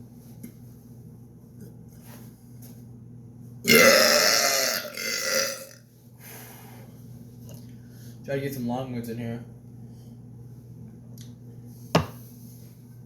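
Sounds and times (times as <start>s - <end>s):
man burping: 3.7s - 5.8s.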